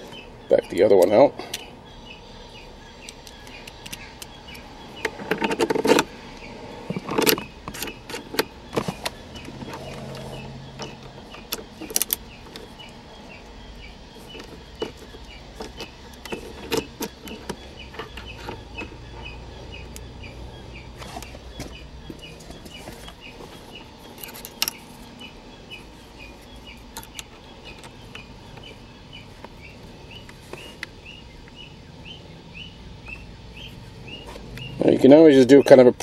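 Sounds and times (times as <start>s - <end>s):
small metal parts clattering: 22.1s - 25.2s.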